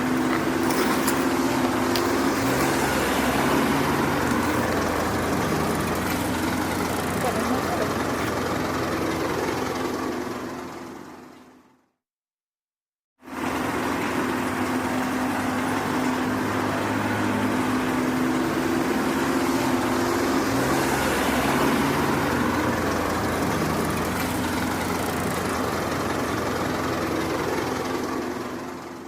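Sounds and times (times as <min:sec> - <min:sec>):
construction machine engine running: 0:00.0 - 0:11.4, 0:21.3 - 0:29.0.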